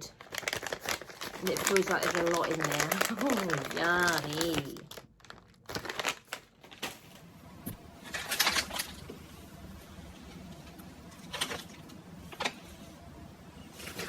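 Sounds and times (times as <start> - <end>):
plastic snack bag crinkling: 0.0 - 7.3, 8.0 - 9.1.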